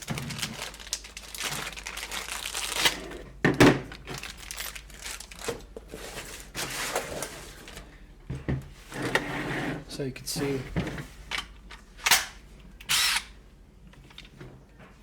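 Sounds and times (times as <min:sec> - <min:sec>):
plastic packaging crinkling: 0:00.0 - 0:07.8.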